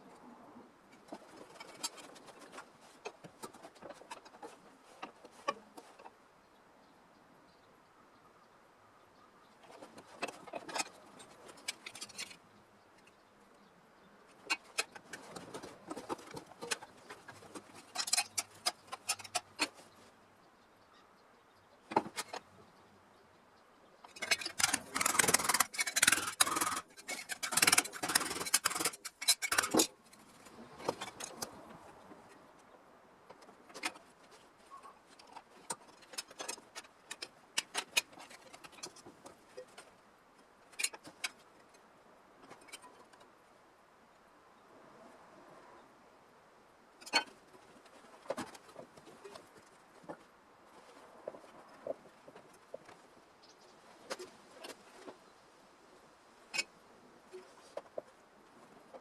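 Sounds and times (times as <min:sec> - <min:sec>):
sharp clicks: 0:24.2 - 0:29.9.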